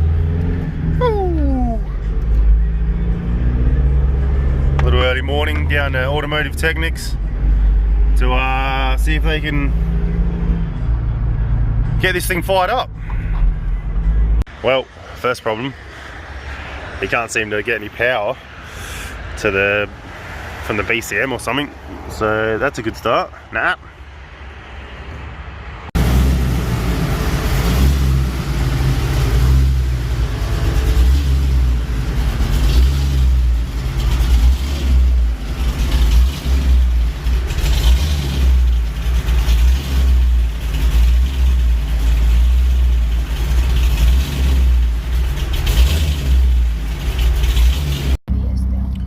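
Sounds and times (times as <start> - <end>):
engine revving with deep rumble: 0.0 - 1.0, 1.9 - 12.3, 25.9 - 49.0.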